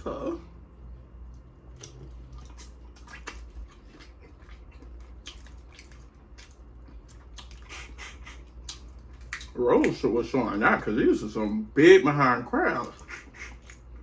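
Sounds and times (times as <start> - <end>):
wet chewing and mouth smacks: 1.2 - 10.1, 12.8 - 14.0.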